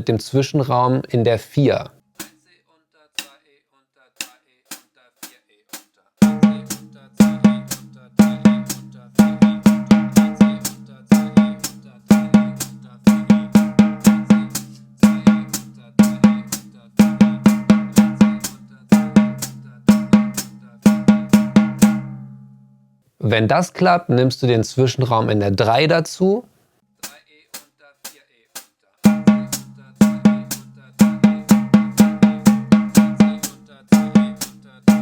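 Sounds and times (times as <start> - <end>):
snare drum double strokes: 27.0 - 35.0.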